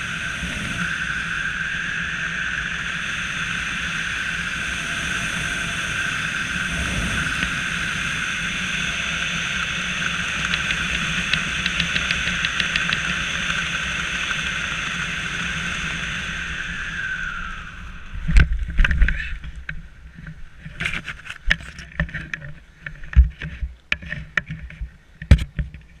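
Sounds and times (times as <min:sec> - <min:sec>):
small motor whining: 0:00.0 - 0:19.7
knocks and handling thumps: 0:18.3 - 0:26.0.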